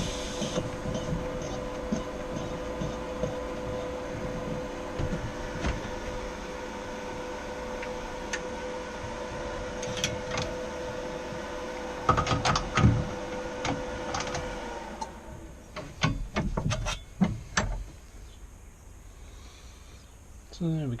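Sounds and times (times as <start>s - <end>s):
welder humming and crackling: 0.0s - 16.1s
knocks and clatters: 0.4s - 6.0s, 15.7s - 18.0s.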